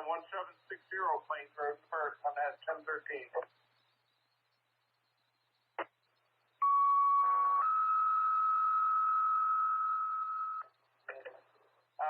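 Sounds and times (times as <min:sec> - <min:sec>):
two-tone paging tones: 0:06.6 - 0:10.8.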